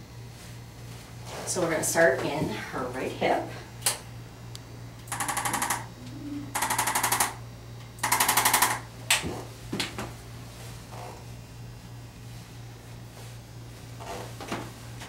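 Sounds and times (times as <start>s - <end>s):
rapid mechanical tapping: 5.1s - 5.9s, 6.6s - 7.4s, 8.0s - 8.8s.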